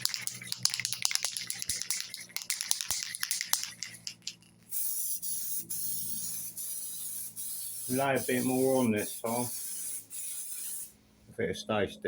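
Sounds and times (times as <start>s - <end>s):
spray can ball rattling: 0.0s - 11.0s
spray paint hiss: 0.0s - 11.0s.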